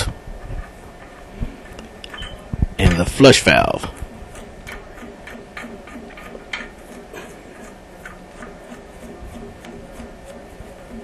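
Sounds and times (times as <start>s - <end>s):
tool clicking on metal parts: 3.7s - 11.0s.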